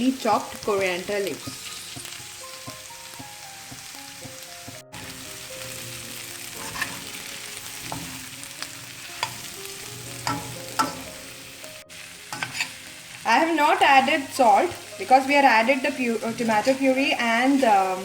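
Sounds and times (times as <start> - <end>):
food sizzling in a frying pan: 0.0 - 18.0
spatula clinking against pan: 9.2 - 9.5, 10.2 - 11.1.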